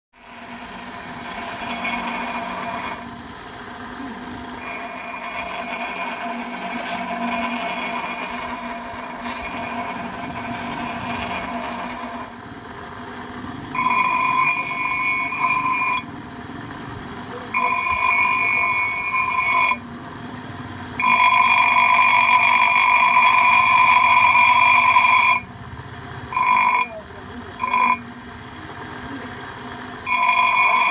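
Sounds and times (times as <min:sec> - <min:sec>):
power tool whining on metal: 0:00.2 - 0:03.1, 0:04.6 - 0:12.4, 0:13.7 - 0:16.1, 0:17.6 - 0:19.8, 0:30.0 - 0:30.9.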